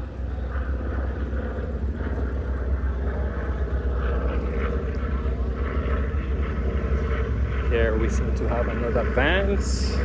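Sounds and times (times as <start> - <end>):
engine drone with low rumble: 0.0 - 10.0.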